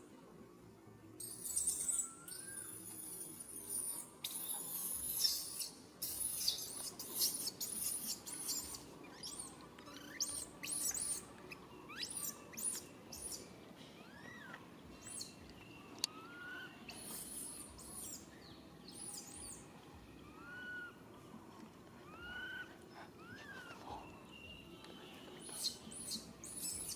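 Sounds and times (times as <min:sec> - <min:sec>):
baby monkey squeaking calls: 0:01.2 - 0:15.4, 0:16.1 - 0:18.3, 0:18.9 - 0:19.6, 0:20.3 - 0:21.0, 0:22.1 - 0:22.6, 0:25.5 - 0:26.9.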